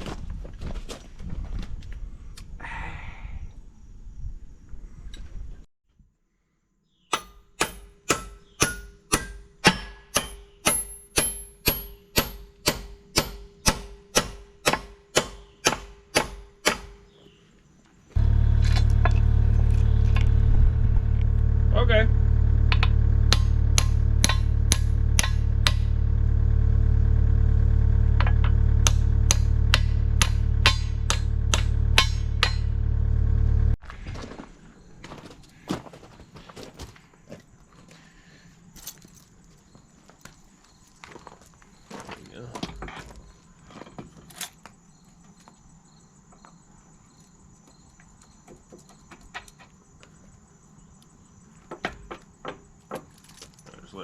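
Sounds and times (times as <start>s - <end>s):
hammer striking steel: 7.1s - 17.0s, 22.7s - 26.0s, 28.2s - 32.9s
low engine hum: 18.2s - 33.8s.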